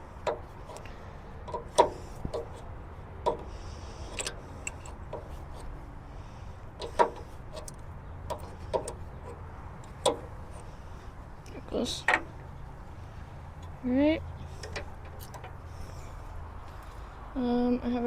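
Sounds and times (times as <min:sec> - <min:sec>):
wrenches clinking on metal fitting: 0:00.2 - 0:05.7.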